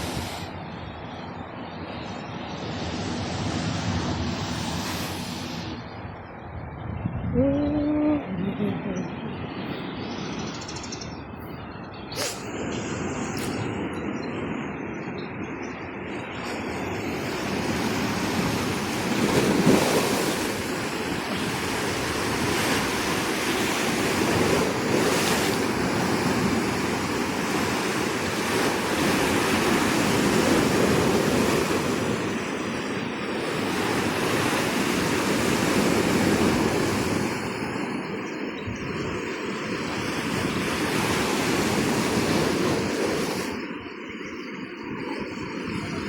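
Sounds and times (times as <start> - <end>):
ocean waves breaking: 0.0 - 6.6, 12.0 - 46.0.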